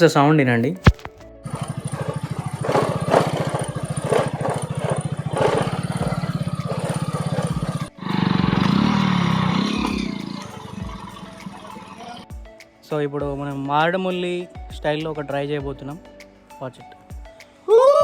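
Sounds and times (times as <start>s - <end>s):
motorcycle engine running: 0.9s - 12.2s
motorcycle parts rattling: 0.9s - 12.2s.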